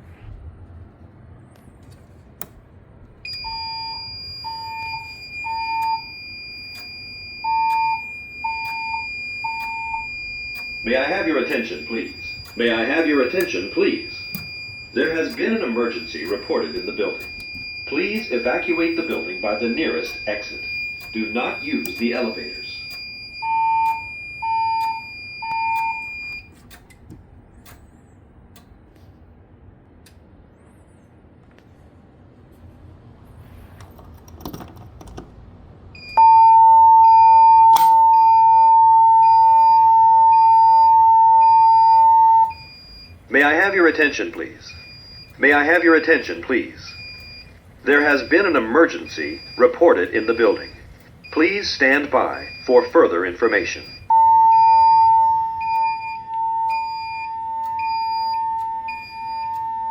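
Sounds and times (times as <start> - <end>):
steady high whine: 0.0 - 33.8, 35.5 - 59.9
pulsing lower alarm beeps: 3.2 - 26.6, 36.0 - 59.9
steady high-pitched alarm tone: 3.2 - 26.6, 36.0 - 59.9.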